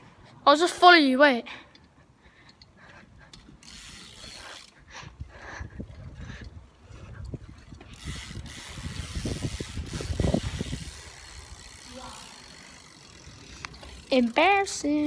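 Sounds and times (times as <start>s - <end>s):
bicycle rolling noise: 1.8s - 15.0s
wind gusting on microphone: 4.0s - 14.1s.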